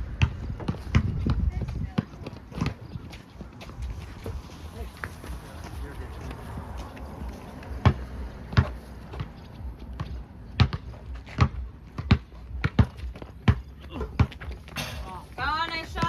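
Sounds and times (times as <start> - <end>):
basketball bouncing on hard floor: 10.0 - 13.6.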